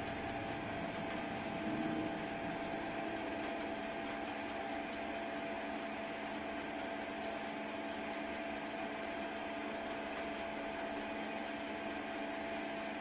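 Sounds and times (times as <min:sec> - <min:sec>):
steady tones: 0:00.0 - 0:04.5
low constant hum: 0:00.0 - 0:05.8.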